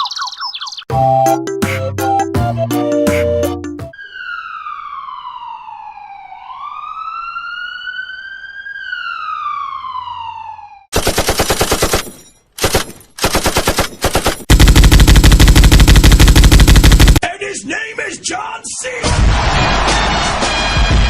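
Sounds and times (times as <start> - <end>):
siren wailing: 3.9 - 10.9
machine-gun fire: 10.9 - 17.2.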